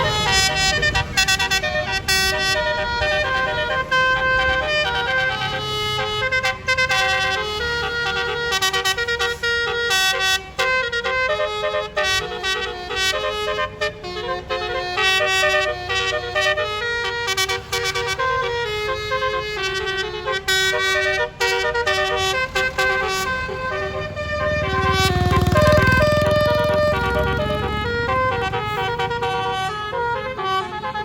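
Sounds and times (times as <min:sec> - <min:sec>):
bus melody horn: 0:00.0 - 0:31.0
low engine rumble: 0:10.6 - 0:31.0.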